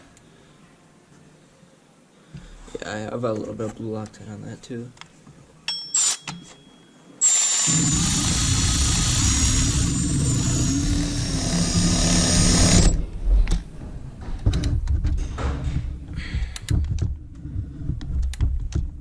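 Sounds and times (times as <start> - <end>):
cordless power tool whining: 7.2 - 13.0.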